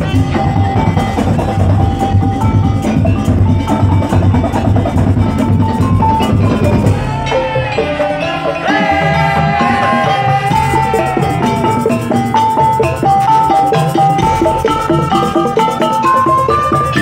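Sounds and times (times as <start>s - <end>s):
drums and wooden percussion: 0.0s - 17.0s
melody with gliding notes: 0.0s - 17.0s.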